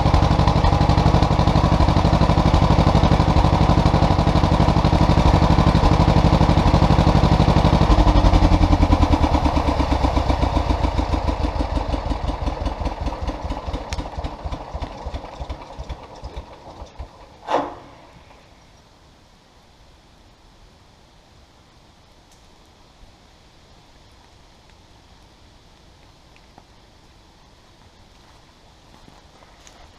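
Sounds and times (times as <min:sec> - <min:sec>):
engine shutting down: 0:00.0 - 0:18.6
short sharp sound: 0:17.4 - 0:18.4.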